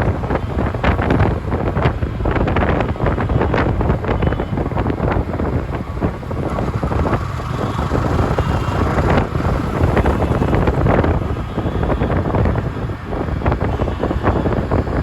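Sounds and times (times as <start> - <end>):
road traffic: 0.0 - 15.0
wind buffeting microphone: 0.0 - 15.0.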